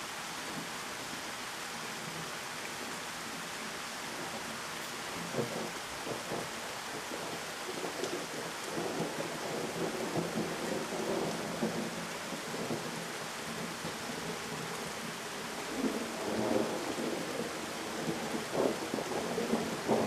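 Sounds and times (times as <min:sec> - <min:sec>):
heavy rain pouring: 0:00.0 - 0:20.0
thunder rumbling: 0:15.7 - 0:20.0.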